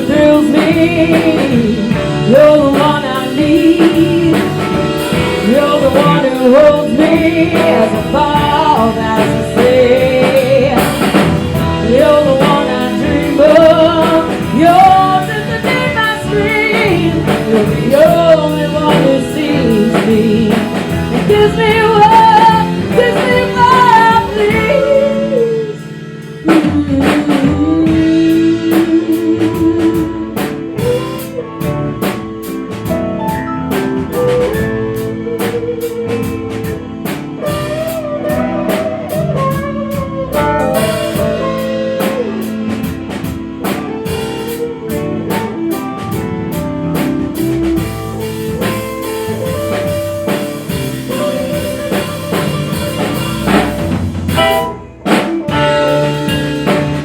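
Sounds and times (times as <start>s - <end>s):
drum kit beat: 0.0s - 57.0s
guitar: 0.0s - 57.0s
wavering lead melody: 28.1s - 57.0s.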